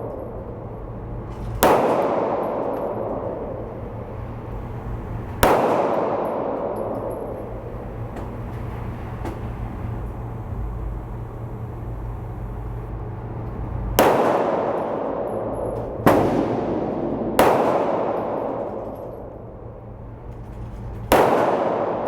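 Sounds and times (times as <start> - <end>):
loud sharp bangs: 0.0 - 8.5, 13.9 - 19.6, 21.0 - 22.0
steady low hum: 0.0 - 22.0.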